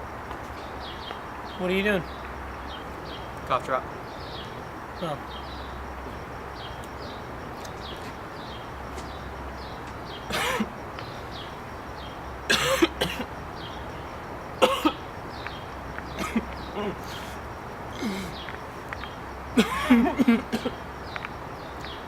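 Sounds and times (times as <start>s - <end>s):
faint bird chirps: 0.5s - 22.0s
person coughing: 10.3s - 10.7s, 12.5s - 13.3s, 14.6s - 15.0s, 16.2s - 17.0s, 19.6s - 20.8s.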